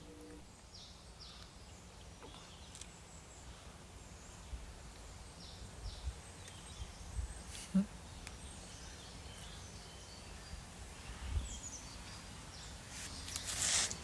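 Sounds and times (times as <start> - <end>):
small bird chirping: 0.0 - 14.0
wind rumble on microphone: 5.7 - 7.5, 10.4 - 11.8.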